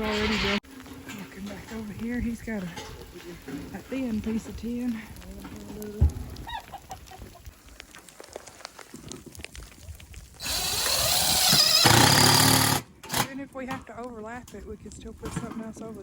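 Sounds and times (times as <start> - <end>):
loud rushing noise: 0.0 - 0.7
chickens clucking: 6.3 - 7.5.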